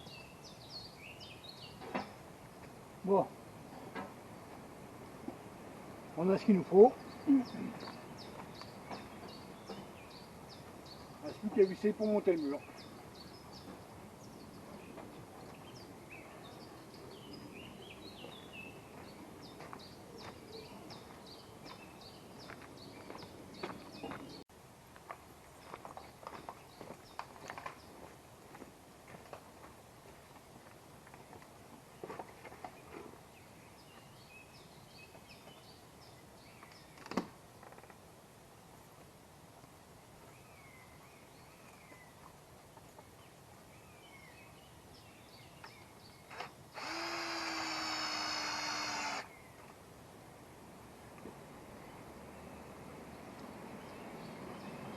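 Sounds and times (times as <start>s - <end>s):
songbird singing: 0.0s - 24.5s, 30.2s - 37.3s, 39.6s - 50.2s, 50.8s - 54.9s
faint outdoor hiss: 0.0s - 54.9s
small birds chirping: 6.2s - 24.5s, 39.6s - 49.8s.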